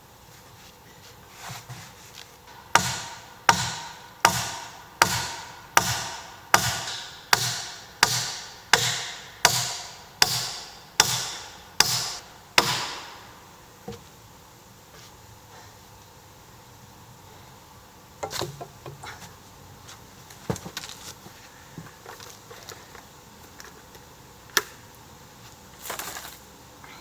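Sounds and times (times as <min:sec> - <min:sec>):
tool striking wood: 0:02.5 - 0:13.3, 0:18.2 - 0:19.1.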